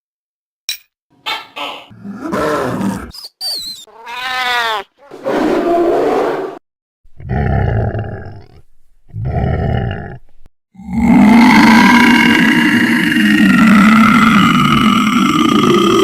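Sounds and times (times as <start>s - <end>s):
dragon growls: 7.2s - 10.2s, 10.8s - 16.0s.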